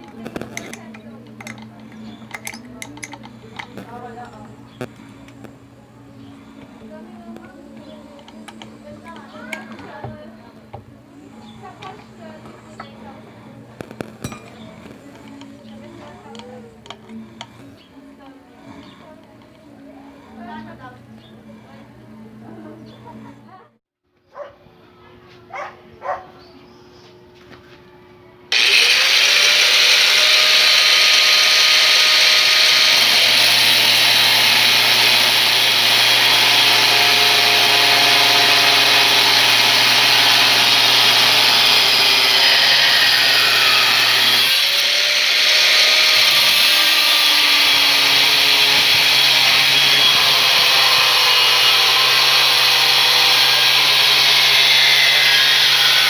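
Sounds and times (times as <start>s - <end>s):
angle grinder running: 0.0s - 5.5s, 28.5s - 56.0s.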